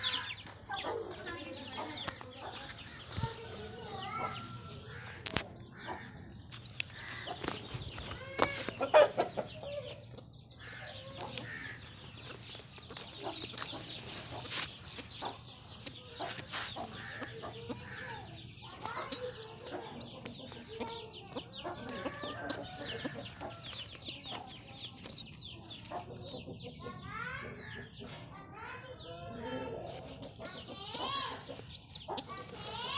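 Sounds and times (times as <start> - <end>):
chickens clucking: 0.0 - 32.9.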